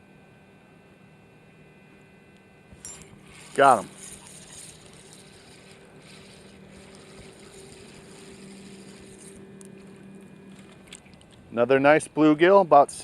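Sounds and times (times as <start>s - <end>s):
motorboat engine hum: 2.7s - 11.6s
light hiss: 2.8s - 11.4s.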